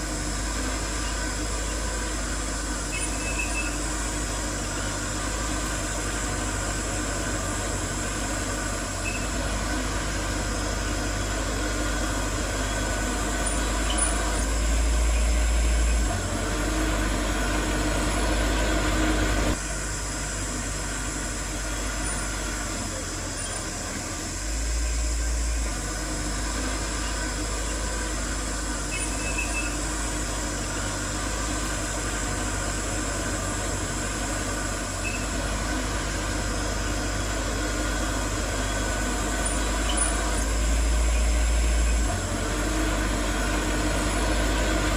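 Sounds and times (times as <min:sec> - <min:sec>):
diesel construction machinery drone: 0:00.0 - 0:44.9.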